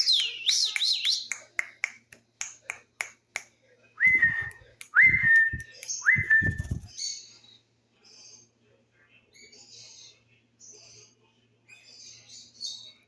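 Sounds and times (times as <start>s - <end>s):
young birds chirping: 0.0s - 1.4s, 4.1s - 8.5s
whistled call: 4.0s - 6.9s.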